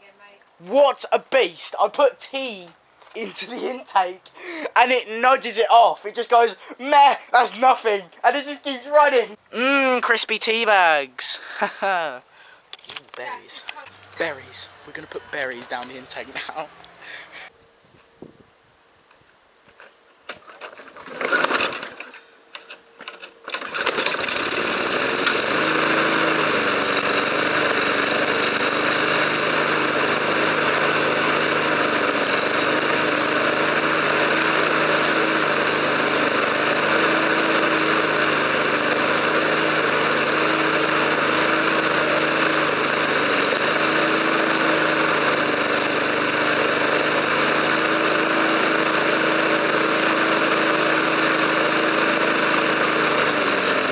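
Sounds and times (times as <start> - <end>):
lawn mower engine running: 10.6 - 12.2, 20.4 - 53.9.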